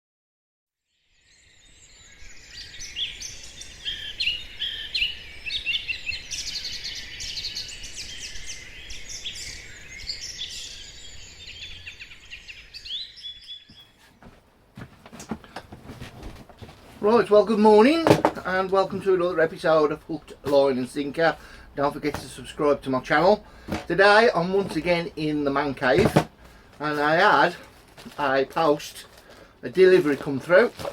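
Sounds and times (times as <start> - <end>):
songbirds singing: 1.1 - 14.2.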